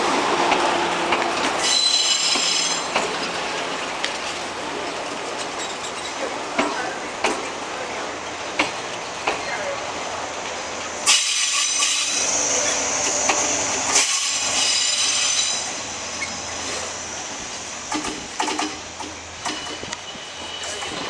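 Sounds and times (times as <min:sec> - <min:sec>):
train hissing and squealing: 0:01.6 - 0:03.0, 0:11.0 - 0:21.0.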